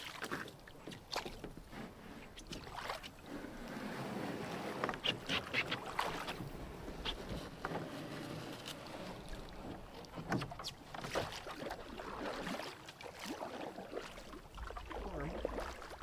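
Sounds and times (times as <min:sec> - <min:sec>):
small water splashes: 0:00.0 - 0:01.7, 0:02.3 - 0:03.3, 0:04.9 - 0:06.6, 0:08.6 - 0:16.0
light wind: 0:00.0 - 0:12.7
low wash of water: 0:00.0 - 0:16.0.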